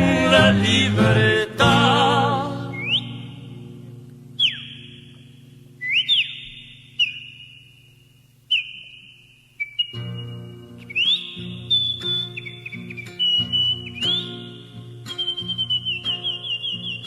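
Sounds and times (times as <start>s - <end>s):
folk music accompaniment: 0.0s - 4.3s, 10.0s - 17.0s
bird-like whistles: 2.7s - 3.5s, 4.4s - 5.2s, 5.8s - 17.0s.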